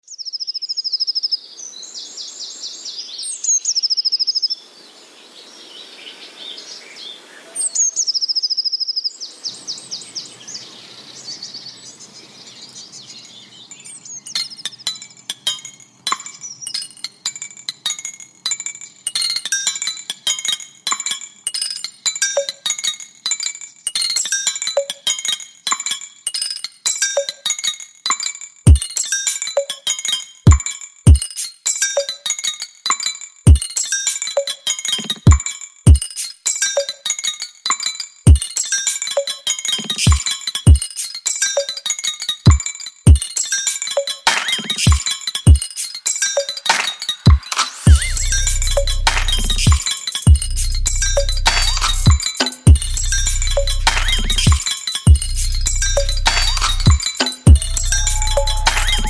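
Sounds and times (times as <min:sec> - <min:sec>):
songbirds trilling: 0:05.4 - 0:16.9, 0:46.7 - 0:59.0
music with bell-like chimes: 0:13.2 - 0:59.0.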